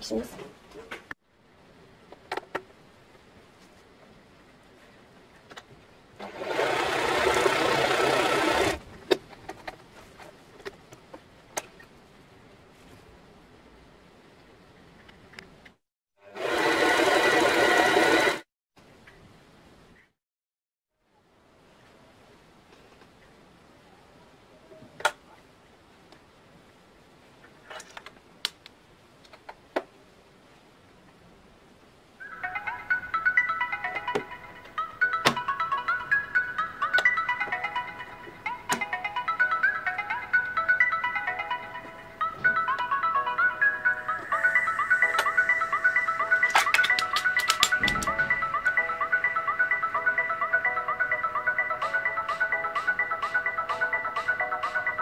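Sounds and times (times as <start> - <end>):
sewing machine running: 6.2 - 8.8, 16.3 - 18.4.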